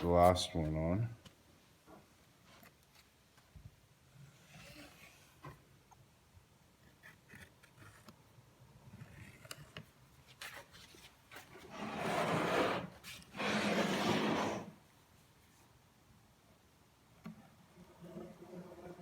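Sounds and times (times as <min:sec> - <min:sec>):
panel scraping: 0:11.6 - 0:14.8.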